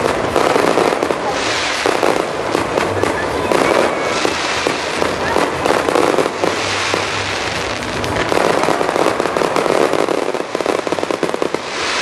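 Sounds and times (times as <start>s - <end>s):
fireworks crackling: 0.0s - 12.0s.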